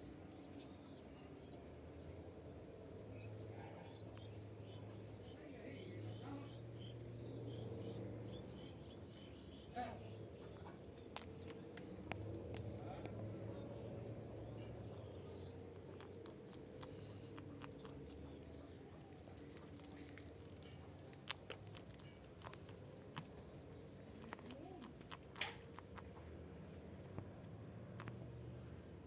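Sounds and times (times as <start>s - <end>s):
low steady hum: 0.0s - 29.0s
insect chirping: 0.2s - 29.0s
sharp clicks: 14.6s - 26.3s, 27.1s - 28.3s.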